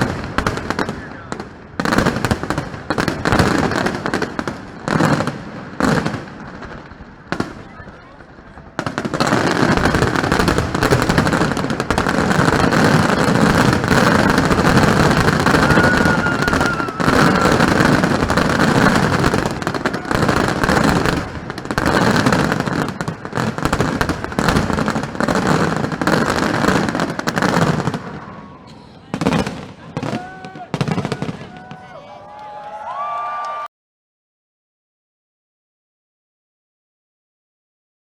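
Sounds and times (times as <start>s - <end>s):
fireworks bangs and crackles: 0.0s - 32.6s
firework whistle: 12.2s - 20.9s.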